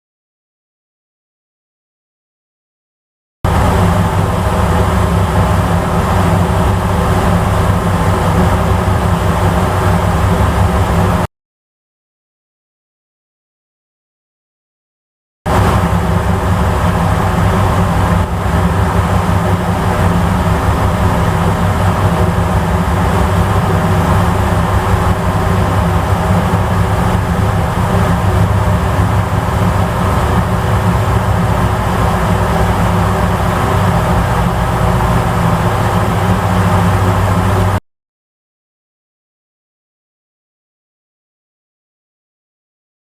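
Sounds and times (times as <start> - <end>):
ferry engines droning: 3.5 - 11.3, 15.5 - 37.8
water noise: 3.5 - 11.3, 15.5 - 37.8.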